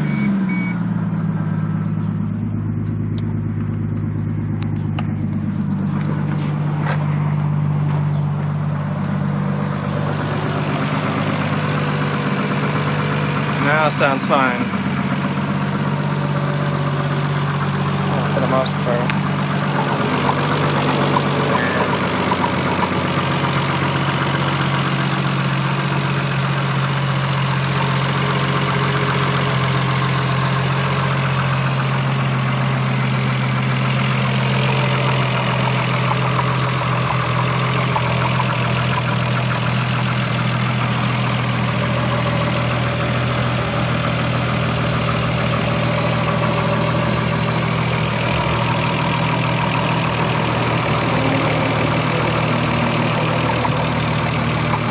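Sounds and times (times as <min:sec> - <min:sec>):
car engine idling: 0:00.0 - 0:54.9
engine knocking: 0:09.7 - 0:54.9.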